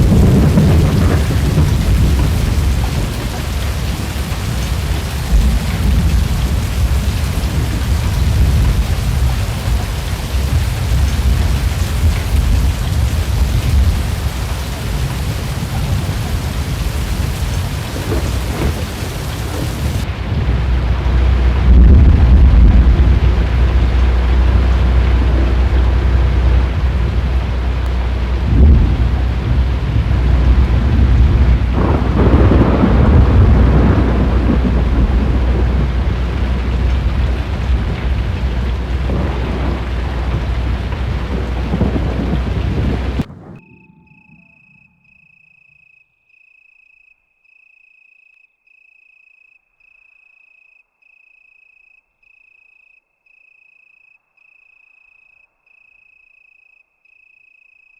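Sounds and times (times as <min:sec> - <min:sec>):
heavy rain: 0:00.0 - 0:43.7
thunder rumbling: 0:00.0 - 0:45.2
wind: 0:00.0 - 0:57.9
faint high chirp: 0:43.5 - 0:57.9.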